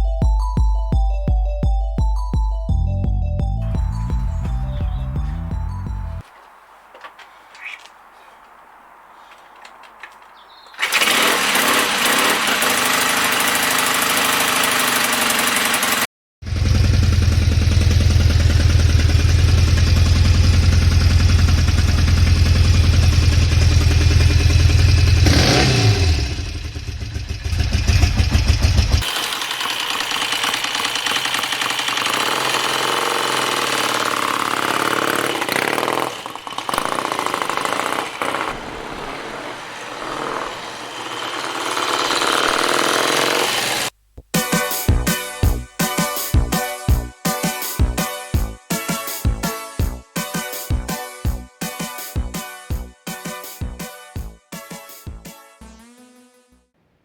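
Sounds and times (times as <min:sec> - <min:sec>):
motorcycle engine running: 0:03.6 - 0:06.2, 0:10.8 - 0:43.9.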